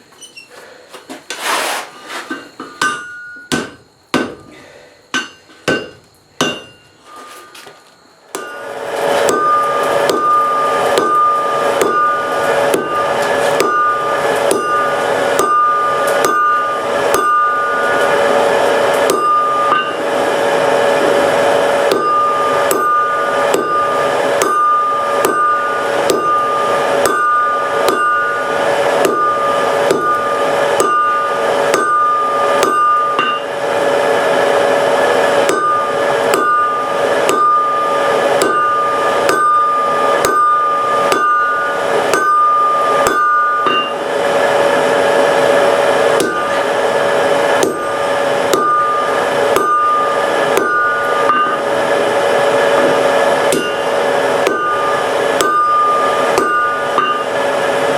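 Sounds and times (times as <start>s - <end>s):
anvil ringing: 2.6s - 4.4s, 5.1s - 7.0s, 8.3s - 57.9s
hammer striking iron on anvil: 2.6s - 4.5s, 5.1s - 7.0s, 8.3s - 57.9s.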